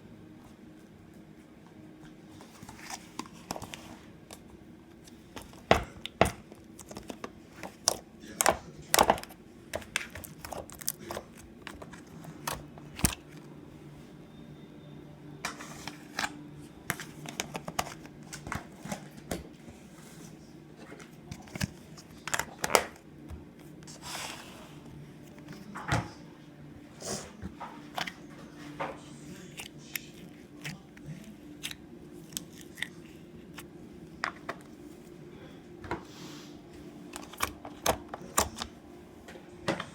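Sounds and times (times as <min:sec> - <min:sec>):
steady low hum: 0:00.0 - 0:39.9.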